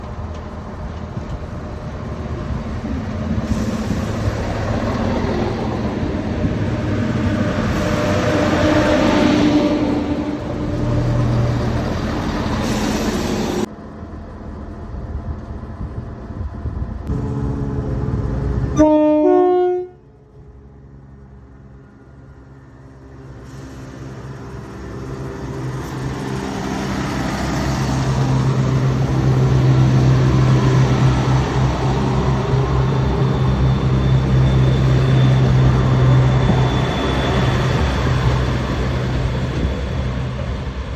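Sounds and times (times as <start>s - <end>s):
diesel train rail rumble: 0.0s - 40.9s
train horn: 18.7s - 20.1s.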